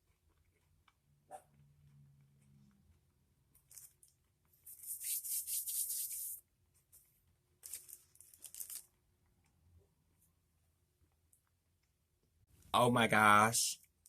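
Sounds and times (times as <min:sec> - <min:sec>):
snack packaging crinkling: 0:03.5 - 0:04.9, 0:07.5 - 0:09.6.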